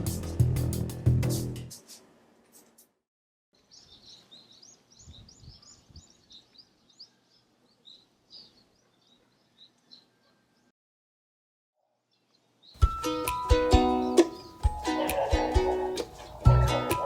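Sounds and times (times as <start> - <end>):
small birds chirping: 3.6 - 10.7, 12.1 - 17.0.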